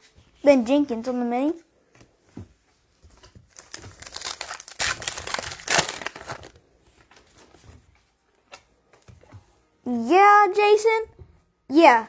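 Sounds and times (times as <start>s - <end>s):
plastic packaging crinkling: 3.4s - 7.5s.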